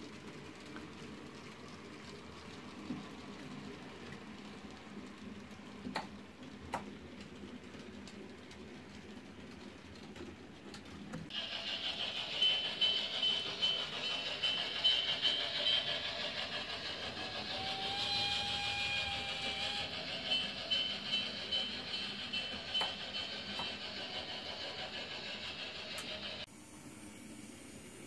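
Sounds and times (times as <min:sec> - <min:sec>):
model train motor whine: 0:11.3 - 0:26.4.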